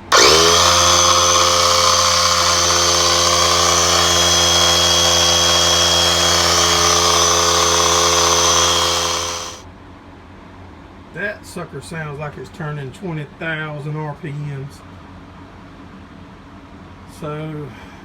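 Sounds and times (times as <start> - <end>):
air compressor whining: 0.0 - 9.6.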